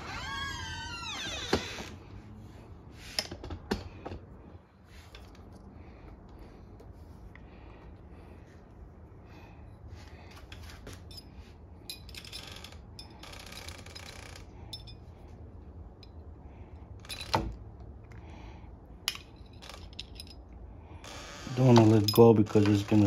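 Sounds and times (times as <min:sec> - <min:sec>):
small metal parts clicking: 0:11.9 - 0:15.0, 0:19.0 - 0:20.5.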